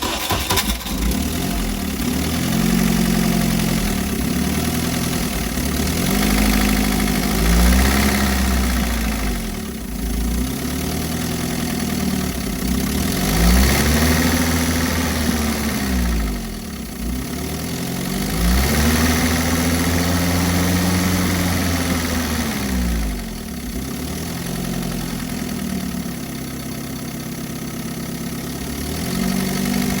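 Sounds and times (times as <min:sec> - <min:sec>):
petrol engine revving: 0:00.0 - 0:10.2.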